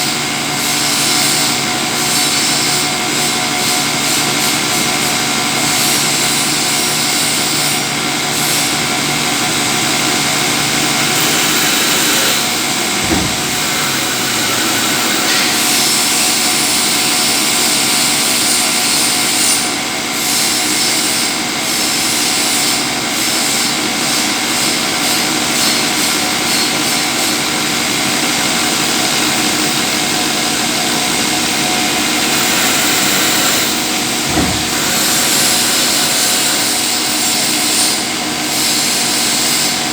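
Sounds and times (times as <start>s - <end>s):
lathe running: 0.0s - 17.5s, 27.5s - 38.9s
brief thump: 11.2s - 15.6s, 34.2s - 36.4s.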